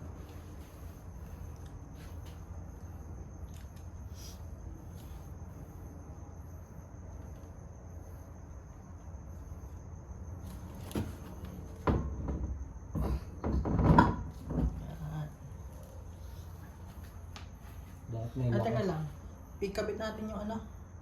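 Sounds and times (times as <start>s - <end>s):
steady low hum: 0.0s - 21.0s
knocking and clatter: 11.8s - 14.8s.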